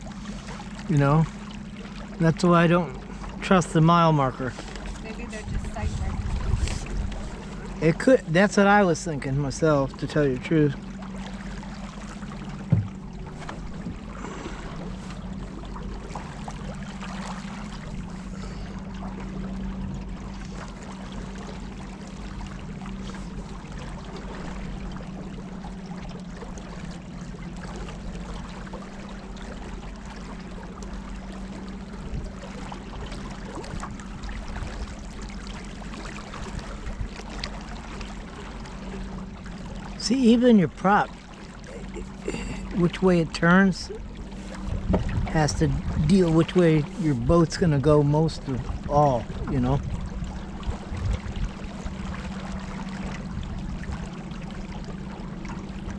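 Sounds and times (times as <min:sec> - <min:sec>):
boat motor humming: 0:00.0 - 0:55.9
water rushing along hull: 0:00.0 - 0:55.9.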